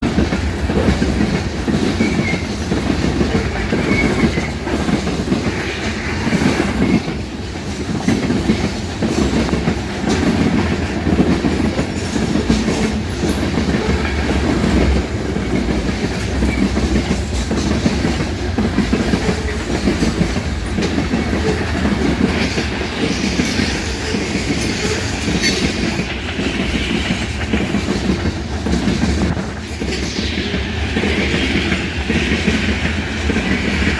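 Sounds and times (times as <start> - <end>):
freight train wheels clicking on rails: 0.0 - 33.9.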